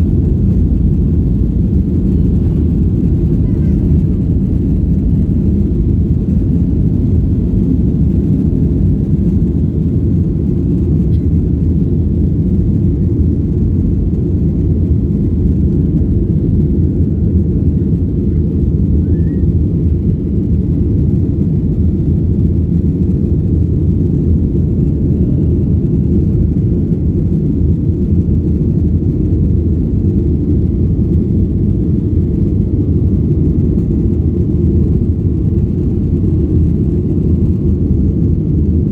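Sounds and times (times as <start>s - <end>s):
airflow: 0.0s - 14.2s
jet engines rumbling in cabin: 0.0s - 38.9s.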